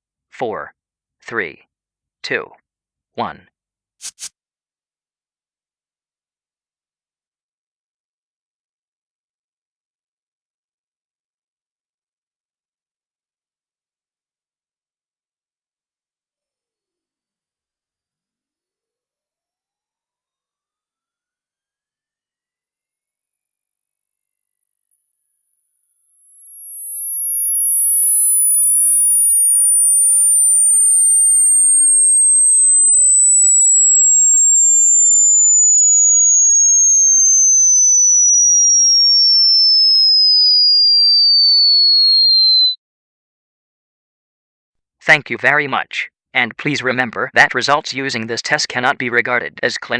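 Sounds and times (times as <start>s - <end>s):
pure tone sliding down: 16.2s - 42.8s.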